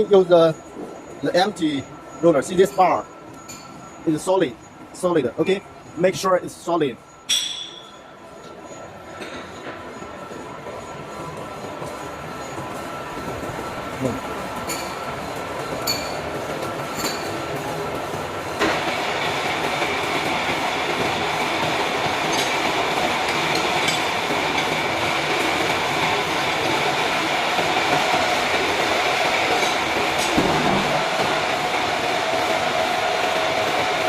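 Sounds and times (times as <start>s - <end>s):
machine tools droning with whine: 0.0s - 34.0s
second steady tone: 6.8s - 10.0s.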